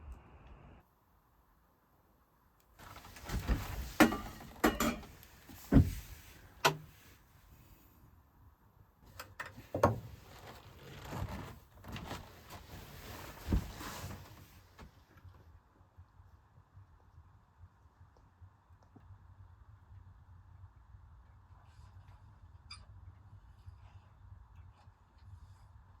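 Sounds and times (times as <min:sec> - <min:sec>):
objects being handled: 0:02.8 - 0:07.1.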